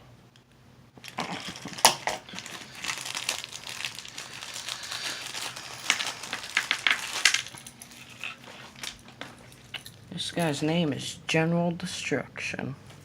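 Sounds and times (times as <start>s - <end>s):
packaging crinkling by hand: 1.0s - 10.7s.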